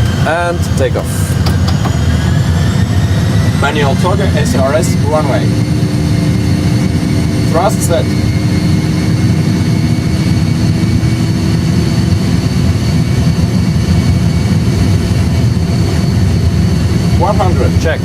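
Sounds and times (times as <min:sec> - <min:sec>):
faint high whine: 0:00.0 - 0:09.1
jet engines rumbling: 0:00.0 - 0:18.0.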